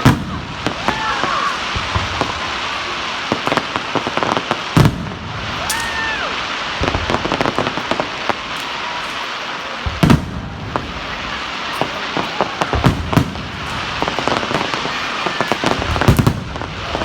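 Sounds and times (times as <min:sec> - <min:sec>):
fireworks booms: 0:00.0 - 0:17.0
fireworks crackling and popping: 0:00.0 - 0:17.0.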